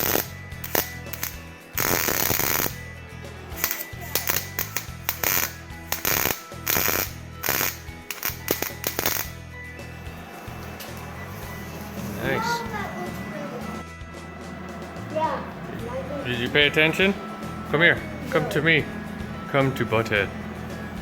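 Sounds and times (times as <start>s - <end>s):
welding arc crackling: 0.0s - 2.8s, 3.5s - 12.7s
background music: 0.0s - 21.0s.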